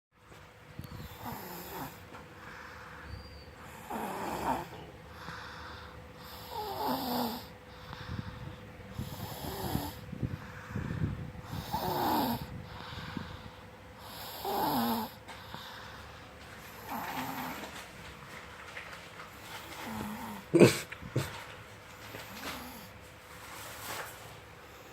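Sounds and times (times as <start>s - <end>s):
child snoring: 1.0s - 2.1s, 3.6s - 7.6s, 8.9s - 13.3s, 14.0s - 15.9s, 16.7s - 17.7s, 19.7s - 21.3s, 22.2s - 23.0s.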